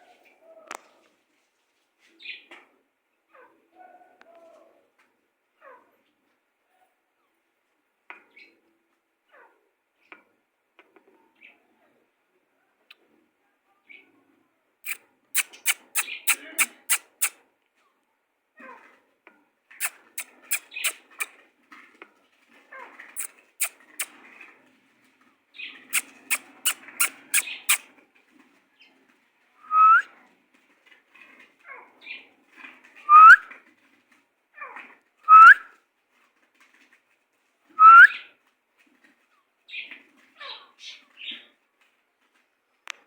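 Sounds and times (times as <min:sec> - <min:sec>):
bird clicks and soft chirps: 0:14.9 - 0:17.3, 0:19.8 - 0:21.3, 0:26.0 - 0:27.8
bird whistling rising in pitch: 0:29.7 - 0:30.1, 0:33.1 - 0:33.4, 0:35.3 - 0:35.6, 0:37.8 - 0:38.2.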